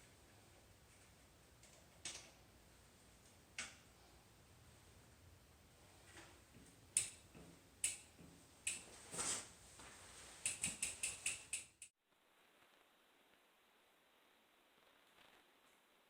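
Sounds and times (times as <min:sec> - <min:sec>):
mechanical clicks on bike wheel: 0:06.9 - 0:08.9, 0:10.4 - 0:11.9.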